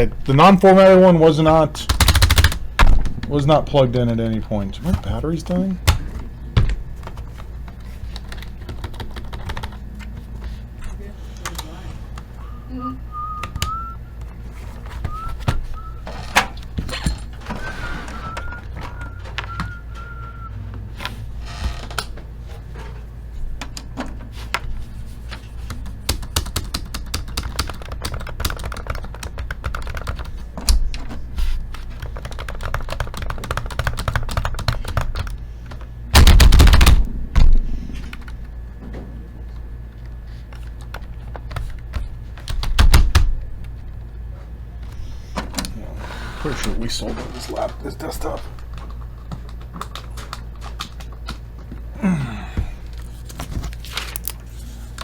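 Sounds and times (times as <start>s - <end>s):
steady low hum: 0.0s - 55.0s
typing on computer keyboard: 1.8s - 2.6s, 7.8s - 9.8s, 25.6s - 30.8s, 31.7s - 37.0s.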